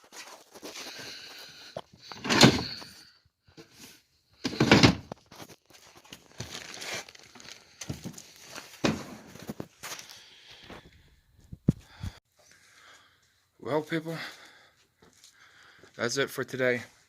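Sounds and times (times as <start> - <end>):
rustling of bags and clothes: 0.0 - 3.0, 3.7 - 10.9.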